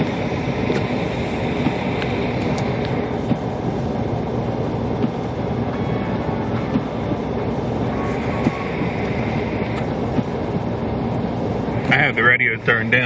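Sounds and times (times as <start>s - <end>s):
car heater fan: 0.0s - 13.0s
tyres rumbling on road: 0.0s - 13.0s.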